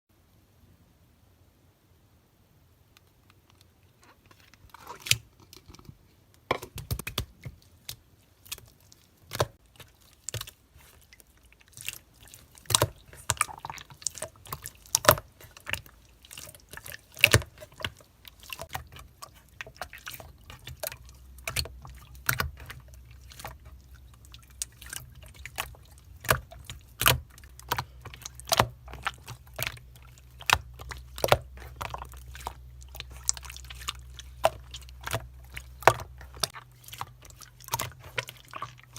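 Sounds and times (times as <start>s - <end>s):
low steady hum: 0.1s - 38.9s.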